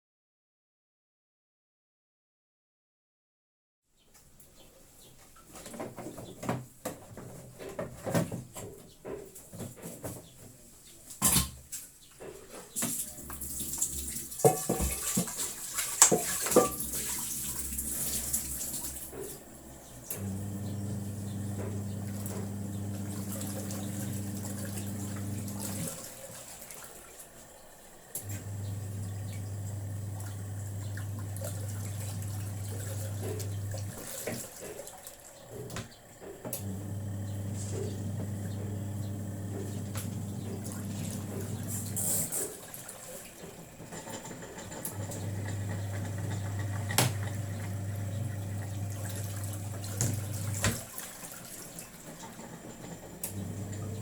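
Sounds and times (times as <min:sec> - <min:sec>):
water running into tub: 0:12.8 - 0:54.0
washing machine motor humming: 0:12.9 - 0:54.0.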